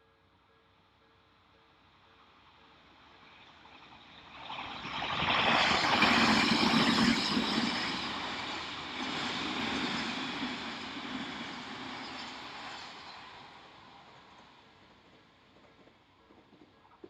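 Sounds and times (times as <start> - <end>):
electric train passing: 0.3 - 16.2.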